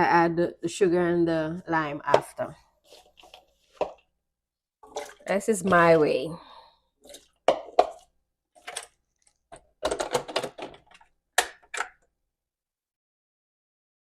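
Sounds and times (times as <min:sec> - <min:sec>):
kitchen utensils clicking and clattering: 0:04.8 - 0:06.1, 0:07.0 - 0:12.0.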